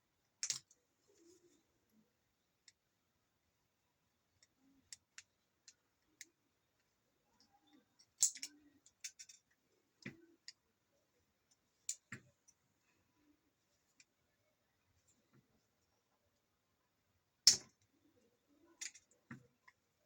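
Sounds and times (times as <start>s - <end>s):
clicks and taps of small parts: 0.4s - 0.8s, 4.4s - 10.6s, 17.4s - 17.9s, 18.8s - 19.8s.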